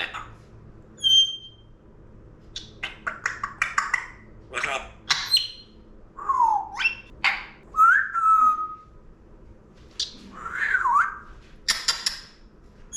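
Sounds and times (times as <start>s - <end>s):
parrot whistling: 1.0s - 1.7s, 5.1s - 8.9s, 10.0s - 11.2s.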